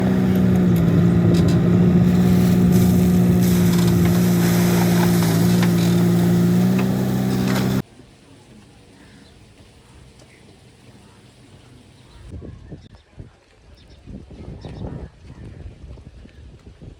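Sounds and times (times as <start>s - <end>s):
diesel engine running: 0.0s - 7.8s.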